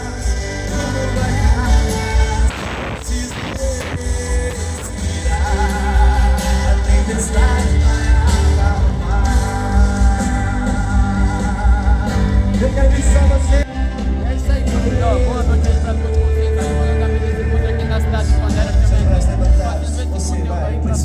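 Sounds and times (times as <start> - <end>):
person singing: 0.0 - 19.8
live worship music: 0.0 - 21.0.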